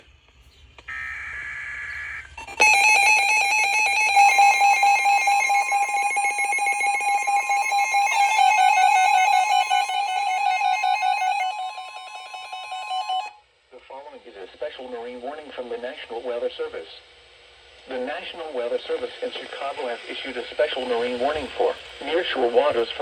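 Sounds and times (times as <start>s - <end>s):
digital data screech: 0.9s - 13.4s
thin steady tone: 2.0s - 13.4s
pulsing electronic alert tone: 2.4s - 13.4s.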